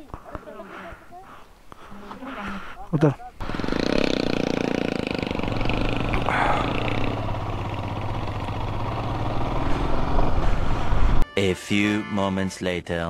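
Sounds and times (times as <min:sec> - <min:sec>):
motorcycle engine under load: 0:03.4 - 0:11.2.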